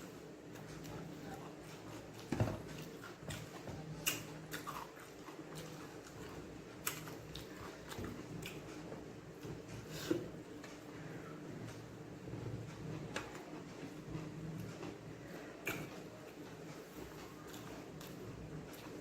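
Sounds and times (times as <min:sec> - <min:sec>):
person chewing food: 0:00.5 - 0:08.8, 0:15.6 - 0:19.0.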